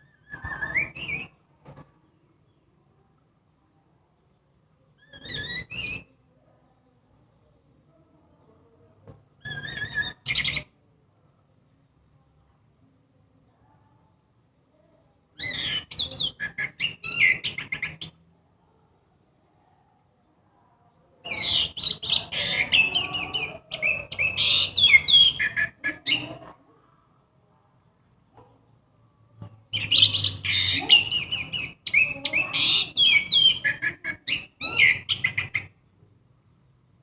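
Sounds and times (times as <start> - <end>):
thrush singing whistled phrases: 0.0 - 1.8, 9.4 - 10.6, 21.3 - 26.2, 29.8 - 35.7.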